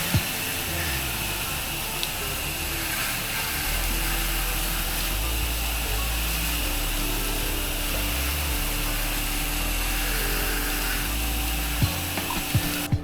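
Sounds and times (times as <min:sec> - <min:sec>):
pressure washer running: 0:00.0 - 0:13.0
spray wand hissing: 0:00.0 - 0:13.0.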